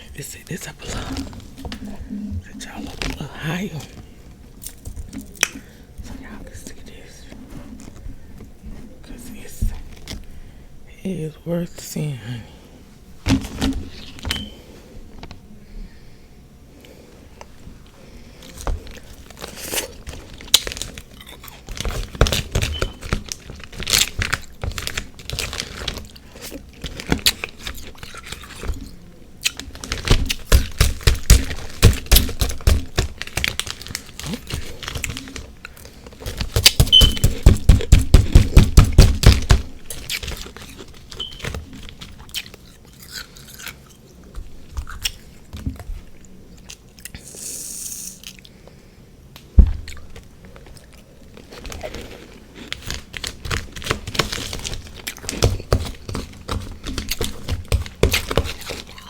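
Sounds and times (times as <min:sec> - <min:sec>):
crunching and chewing ice: 0:18.4 - 0:47.2, 0:49.8 - 0:59.0.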